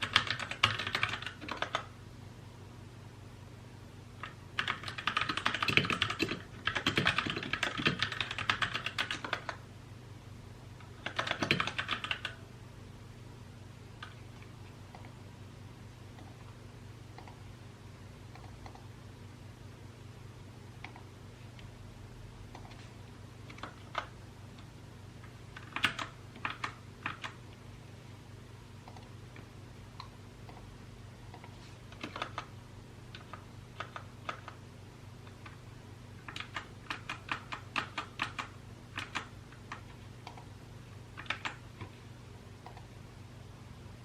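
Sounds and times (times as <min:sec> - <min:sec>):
mechanical keyboard typing: 0:00.0 - 0:01.9, 0:04.2 - 0:09.6, 0:10.9 - 0:12.4, 0:23.4 - 0:24.1, 0:25.6 - 0:27.4, 0:31.3 - 0:32.5, 0:33.1 - 0:34.6, 0:36.2 - 0:40.5, 0:41.2 - 0:41.9
faint low hum: 0:00.0 - 0:44.0.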